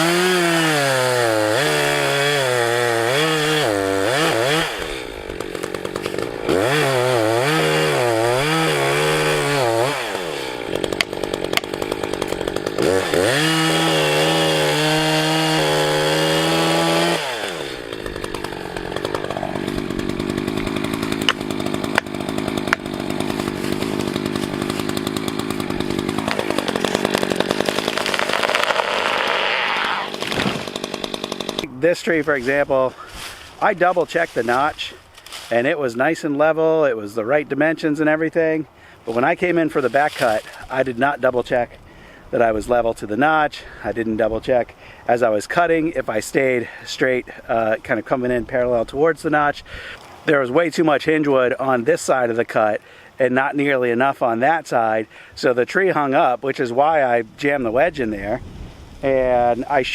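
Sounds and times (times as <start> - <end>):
chainsaw cutting tree trunk: 0.0 - 36.2, 39.1 - 41.7.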